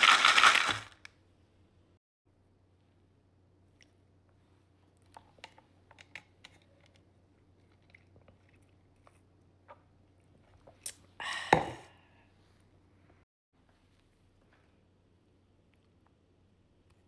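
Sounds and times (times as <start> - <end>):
chewing crunches: 0.0 - 1.0.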